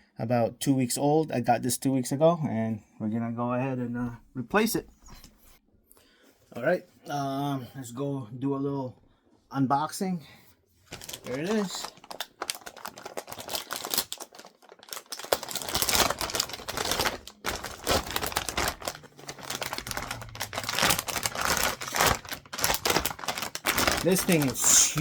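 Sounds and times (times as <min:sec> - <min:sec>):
packaging rustling and crinkling: 0:10.8 - 0:25.0.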